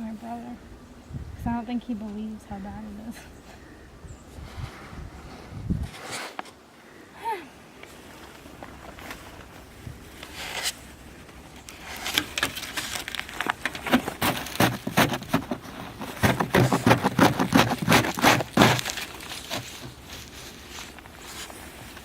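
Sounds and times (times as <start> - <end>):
icy snow crunching and scraping: 7.9 - 22.0.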